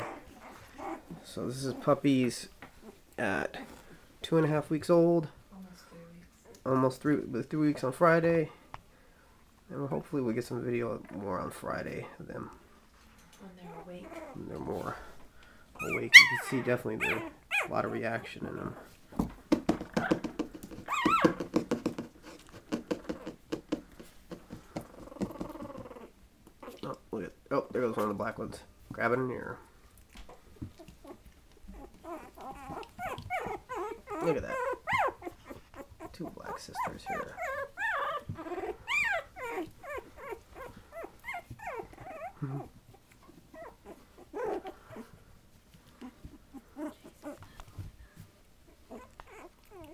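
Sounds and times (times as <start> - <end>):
puppies squeaking and whimpering: 0.0 - 2.0, 13.6 - 15.0, 15.8 - 18.8, 19.8 - 21.7, 24.8 - 26.9, 30.2 - 45.3, 45.9 - 47.6, 48.6 - 49.9
soft puppy whine: 0.0 - 4.6, 10.7 - 19.1, 19.9 - 27.1, 29.4 - 49.9
high puppy squeal: 15.8 - 17.8, 20.8 - 21.5, 31.0 - 42.4, 48.9 - 49.9
light taps and scratches: 19.1 - 26.0.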